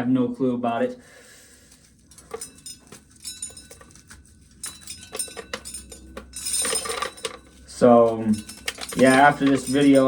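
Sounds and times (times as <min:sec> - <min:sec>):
corn kernels clicking and clinking: 0:02.1 - 0:10.0.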